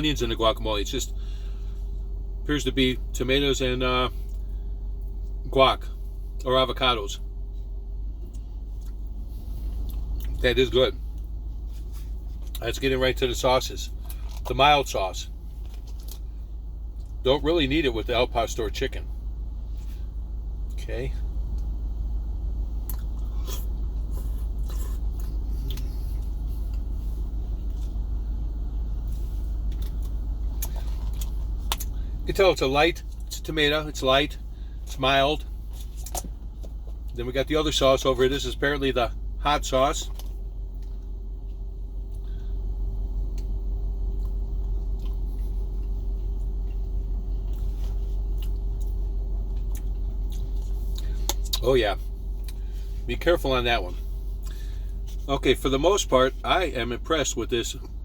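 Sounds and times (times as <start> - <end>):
car engine rumble inside cabin: 0.0 - 58.0
constant hum: 0.0 - 58.0
person chewing food: 22.8 - 28.1, 29.0 - 32.0, 43.3 - 51.6.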